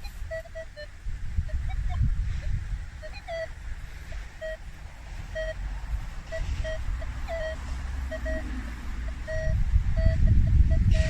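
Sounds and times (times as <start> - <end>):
metal detector beeps: 0.0 - 0.9, 3.0 - 3.5, 4.4 - 4.7, 5.3 - 5.7, 6.3 - 11.0
low rumble of wind or handling: 0.0 - 11.0.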